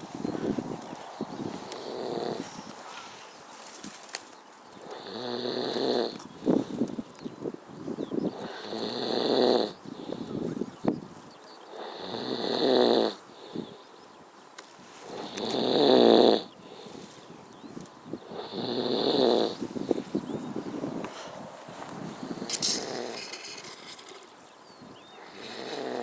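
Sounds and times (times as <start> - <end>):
man snoring: 1.8 - 2.4, 4.8 - 6.2, 8.4 - 9.8, 11.7 - 13.2, 15.2 - 16.5, 18.3 - 19.6, 25.2 - 26.0.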